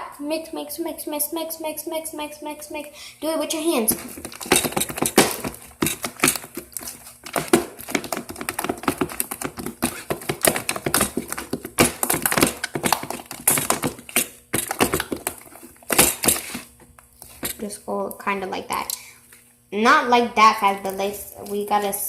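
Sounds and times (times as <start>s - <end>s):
hands squishing slime: 3.6s - 17.7s.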